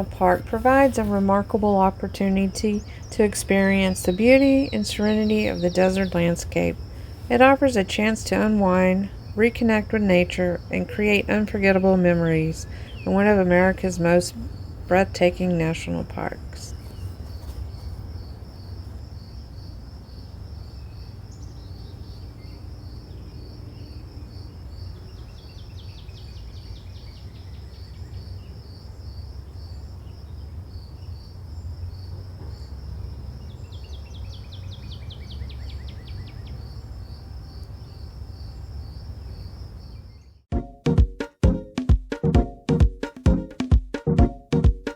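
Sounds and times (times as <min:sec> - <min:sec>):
bird singing falling notes: 0:00.0 - 0:18.8
insects chirping: 0:00.0 - 0:40.5.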